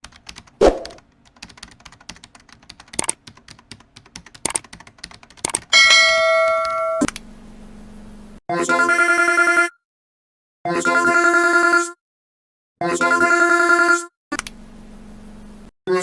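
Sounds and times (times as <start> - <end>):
rapid typing clicks: 0.0 - 7.2
phone ringing: 5.7 - 7.1
bell-like ding: 5.8 - 7.1.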